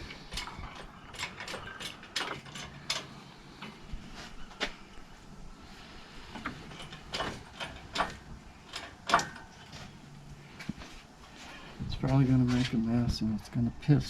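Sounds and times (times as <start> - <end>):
metal clicks and creaks of hoist: 0.0 - 3.8, 6.3 - 10.0.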